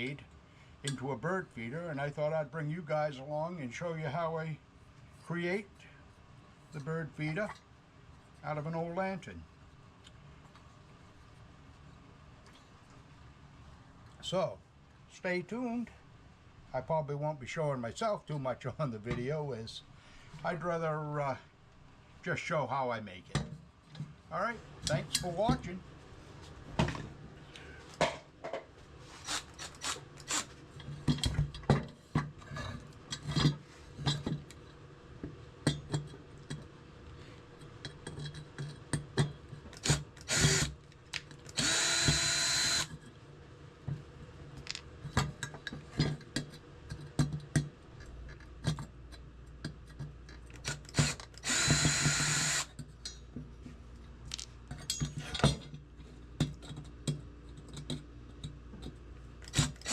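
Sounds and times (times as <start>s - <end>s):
power drill running: 29.3s - 30.5s, 39.8s - 40.7s, 41.5s - 42.9s, 50.6s - 52.7s, 59.5s - 59.9s.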